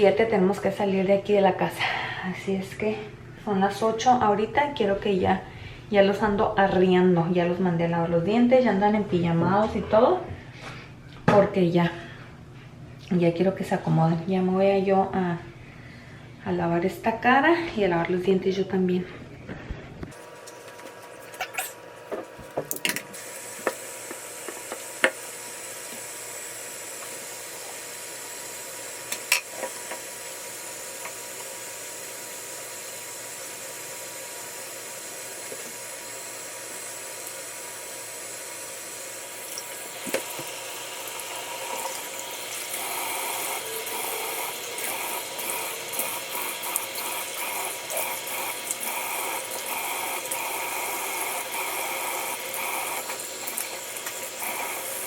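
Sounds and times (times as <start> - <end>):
sink tap running: 20.1 - 55.0.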